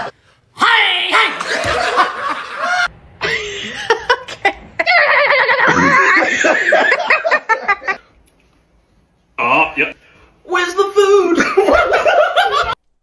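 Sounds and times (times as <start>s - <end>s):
person laughing: 1.2s - 8.0s.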